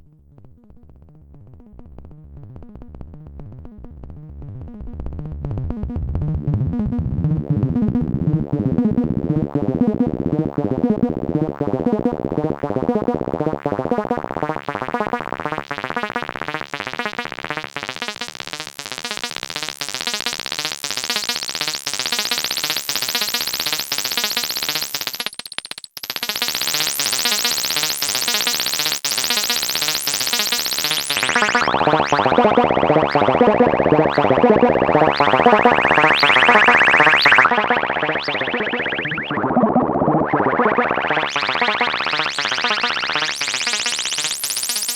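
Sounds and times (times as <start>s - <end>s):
repeating filtered synthesizer notes: 0.2s - 25.0s, 26.2s - 44.9s.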